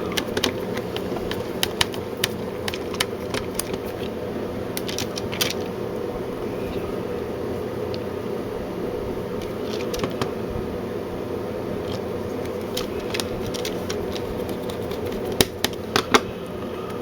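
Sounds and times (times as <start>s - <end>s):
plastic parts clicking and tapping: 0.0s - 4.1s, 4.7s - 5.7s, 9.4s - 10.3s, 11.9s - 16.2s
steady background hum: 0.0s - 17.0s.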